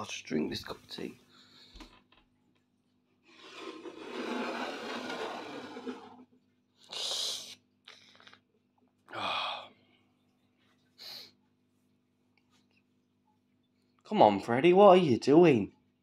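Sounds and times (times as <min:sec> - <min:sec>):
person slurping tea: 0:03.3 - 0:06.2.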